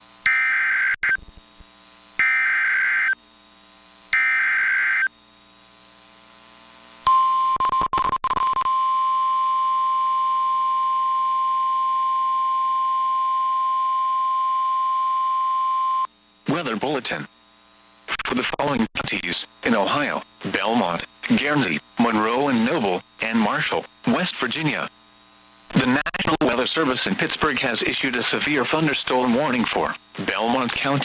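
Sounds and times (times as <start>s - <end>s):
long steady alert tone: 2.2s - 3.2s, 4.1s - 5.1s.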